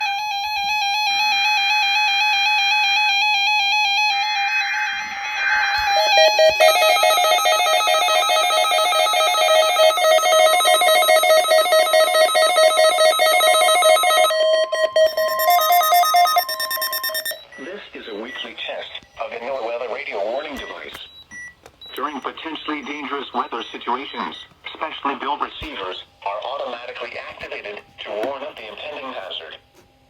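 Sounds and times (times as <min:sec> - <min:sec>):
rapidly pulsing tone pattern: 0:06.0 - 0:17.4
screechy digital data bursts: 0:15.0 - 0:17.4.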